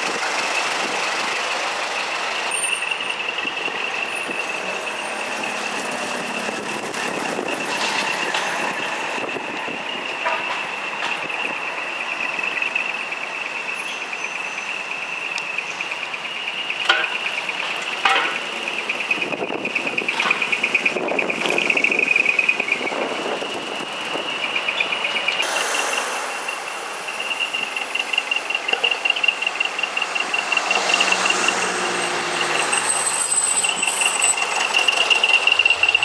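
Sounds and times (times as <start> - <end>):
truck engines running: 0.0 - 36.0
high-pitched pulsing tone: 25.4 - 36.0
hiss: 25.4 - 36.0.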